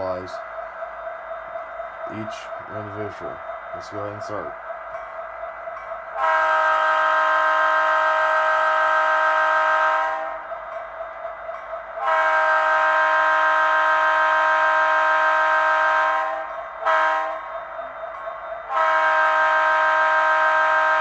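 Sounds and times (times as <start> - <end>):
train air horn blasts: 6.2 - 10.4, 12.0 - 17.5, 18.7 - 21.0.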